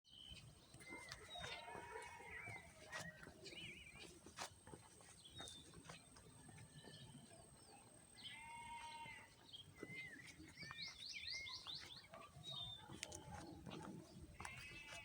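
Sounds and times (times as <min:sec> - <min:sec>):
faint high bird calls: 0:08.2 - 0:13.4.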